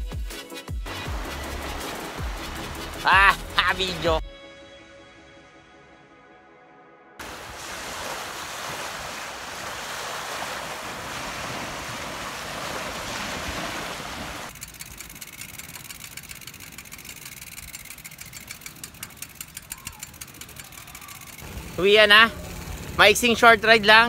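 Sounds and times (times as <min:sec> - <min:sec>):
fast even ticking: 0:14.5 - 0:24.0.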